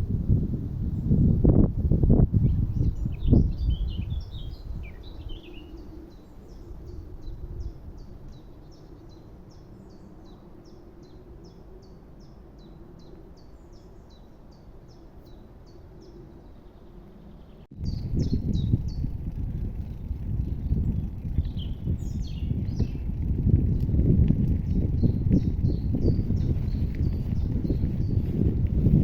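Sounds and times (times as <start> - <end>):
songbird warbling and chirping: 2.7 - 7.4, 21.4 - 23.0
low rumble: 17.7 - 29.0.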